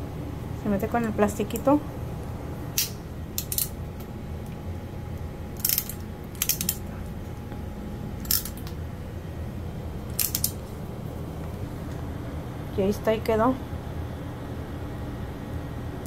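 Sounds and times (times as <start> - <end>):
crimping pliers clicking: 2.8 - 3.7, 5.6 - 6.8, 8.2 - 8.7, 10.1 - 10.6.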